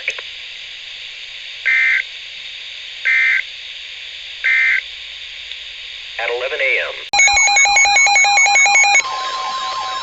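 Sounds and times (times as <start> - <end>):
radio hiss: 0.0 - 9.2
short buzzy data tones: 7.2 - 9.1.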